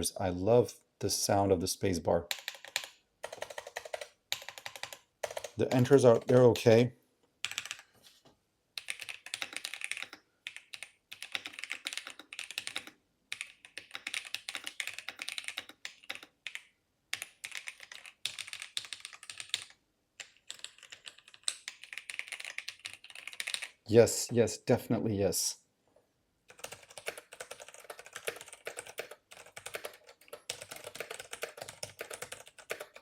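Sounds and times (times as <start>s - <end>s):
typing on mechanical keyboard: 2.3s - 6.6s, 7.4s - 7.9s, 8.8s - 23.8s, 26.5s - 33.0s.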